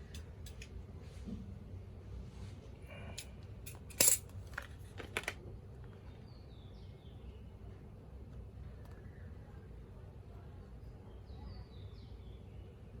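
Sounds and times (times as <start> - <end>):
small parts clicking and knocking: 0.0 - 0.8, 3.2 - 5.4.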